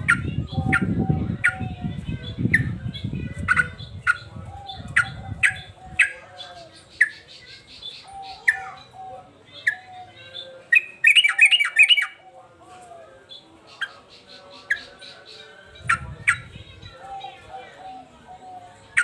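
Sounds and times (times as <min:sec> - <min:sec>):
bulbul sharp calls: 0:00.0 - 0:12.2.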